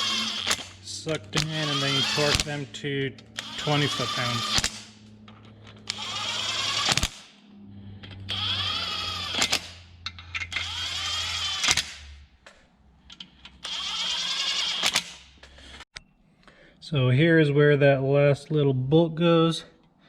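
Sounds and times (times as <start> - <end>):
power driver running: 0.0 - 12.2, 13.6 - 15.5.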